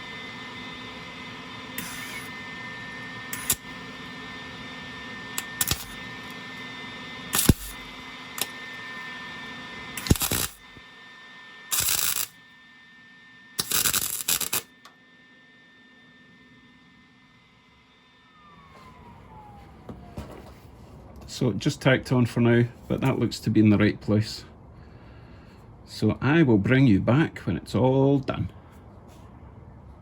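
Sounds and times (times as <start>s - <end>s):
welder hum: 0.0s - 20.2s
welding arc crackle: 1.6s - 2.4s, 3.3s - 3.8s, 5.4s - 6.3s, 7.3s - 8.6s, 10.0s - 10.8s, 11.7s - 12.4s, 13.6s - 14.7s.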